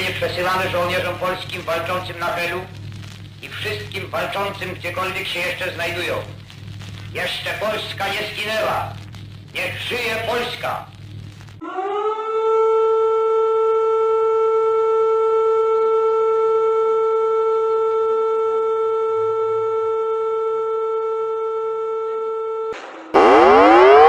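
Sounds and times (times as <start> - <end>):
siren steady tone: 11.6 - 24.0.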